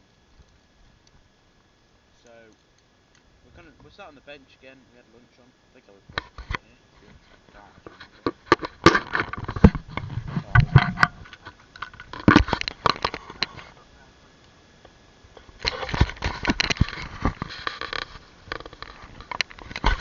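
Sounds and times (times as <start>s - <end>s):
handling noise knocks and clicks: 7.9s - 13.5s.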